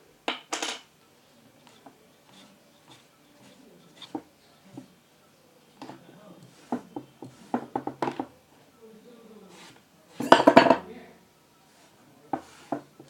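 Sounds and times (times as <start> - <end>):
faint scrubbing of small parts: 1.6 - 5.0, 5.8 - 7.8, 9.4 - 10.6, 11.7 - 13.0.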